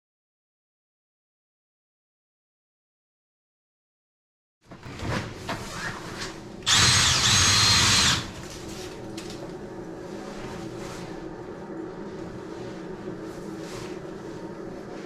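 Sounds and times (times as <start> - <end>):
shop vac hum: 4.7 - 15.0
drill motor whine: 6.7 - 8.3.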